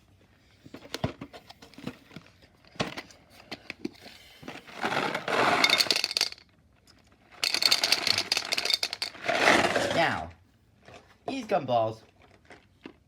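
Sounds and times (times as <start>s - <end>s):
gumballs rattling in a container: 4.7s - 6.5s, 7.2s - 10.2s.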